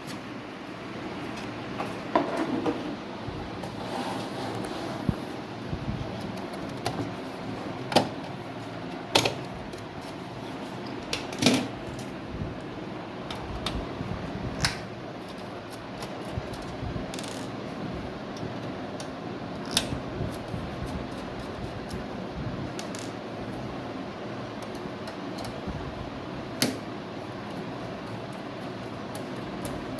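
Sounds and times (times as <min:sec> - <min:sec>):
computer case parts clicking: 0:07.8 - 0:09.9, 0:26.6 - 0:27.0.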